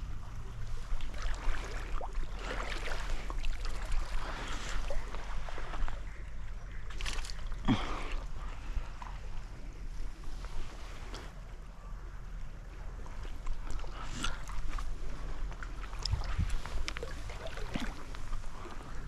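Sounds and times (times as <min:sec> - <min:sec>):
stream water splashing: 0:00.0 - 0:06.2, 0:13.1 - 0:19.0
steady low rumble: 0:00.0 - 0:06.9, 0:07.5 - 0:19.0.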